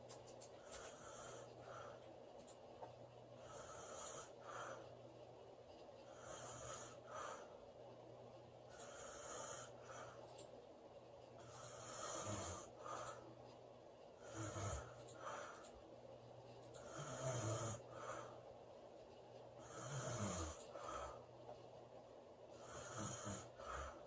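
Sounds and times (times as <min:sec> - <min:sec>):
woman snoring: 0:06.1 - 0:07.1, 0:11.4 - 0:13.1, 0:14.2 - 0:15.0, 0:16.8 - 0:18.2, 0:19.6 - 0:21.2, 0:22.6 - 0:24.0.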